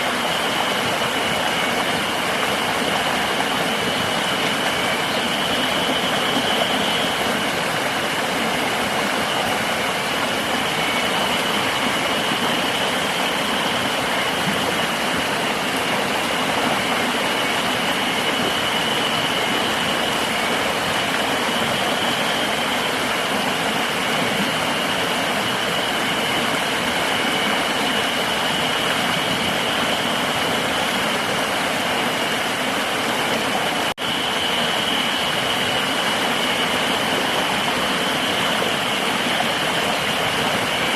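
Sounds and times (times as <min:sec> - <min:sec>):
flowing river water: 0:00.0 - 0:40.9
high-pitched insect drone: 0:00.3 - 0:07.9.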